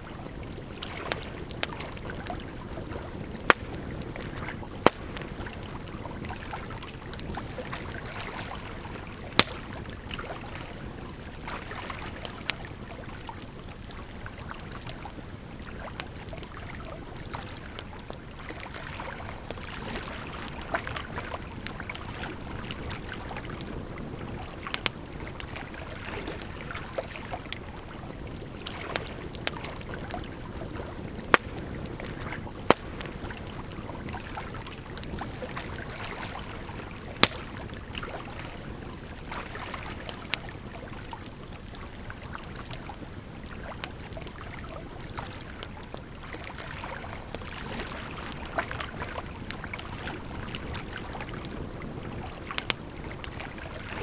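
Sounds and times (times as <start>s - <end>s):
firewood crackling and popping: 0.0s - 53.8s.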